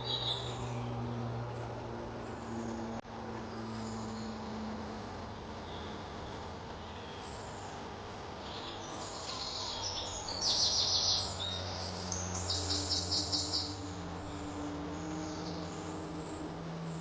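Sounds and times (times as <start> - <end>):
songbird trill: 0.0 - 1.2, 8.4 - 17.0
steady low hum: 0.0 - 17.0
bird chirps: 8.4 - 16.0.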